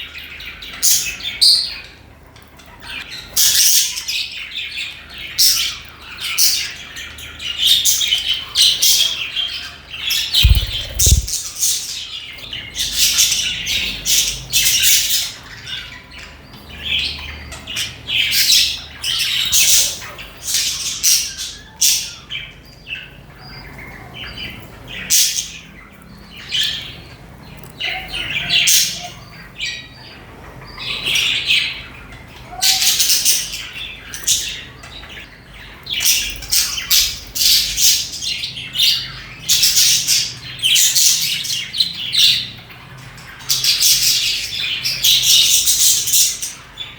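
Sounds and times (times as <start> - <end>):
budgerigars chirping and chattering: 0.0 - 46.9
brief low thumps: 10.4 - 11.4.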